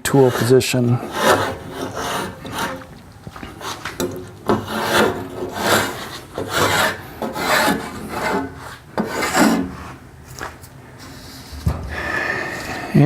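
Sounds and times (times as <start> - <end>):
blade shaving wood: 0.0 - 9.9.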